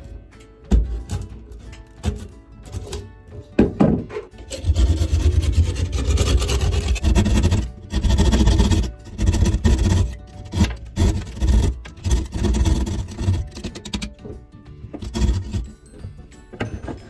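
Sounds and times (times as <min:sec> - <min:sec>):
tool rasping on wood: 0:00.9 - 0:03.1, 0:04.4 - 0:16.1
knock: 0:03.6 - 0:04.3.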